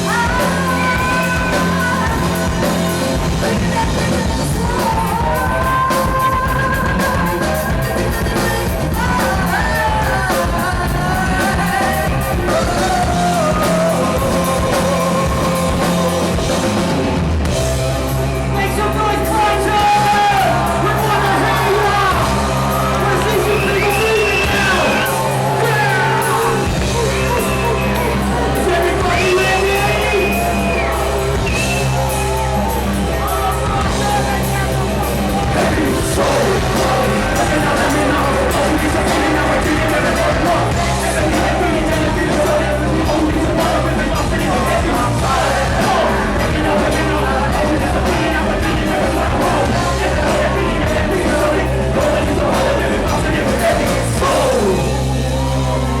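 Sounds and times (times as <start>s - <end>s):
person singing: 0.0s - 16.6s, 18.9s - 56.0s
drums with cymbals: 0.0s - 55.6s
bass line: 0.0s - 56.0s
live rock band playing: 0.0s - 56.0s.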